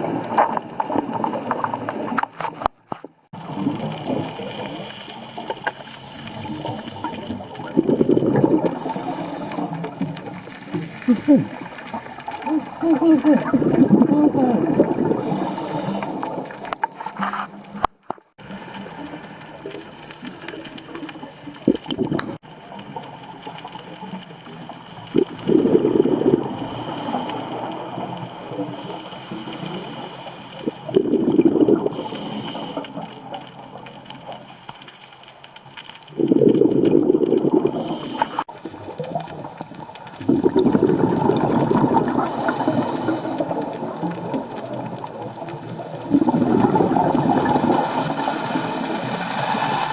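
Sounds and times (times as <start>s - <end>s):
diver exhaling bubbles underwater: 3.4s - 16.8s, 25.0s - 33.2s, 36.1s - 49.9s.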